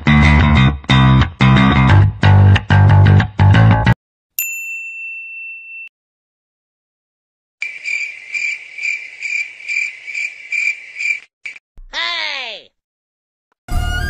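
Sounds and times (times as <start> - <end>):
high steady ding: 4.4 - 5.9
crickets chirping: 7.6 - 11.3.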